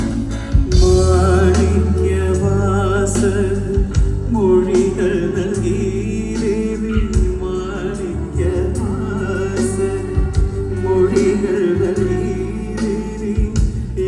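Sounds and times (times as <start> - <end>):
person singing with vibrato: 0.0 - 14.0
steady bass notes: 0.0 - 14.0.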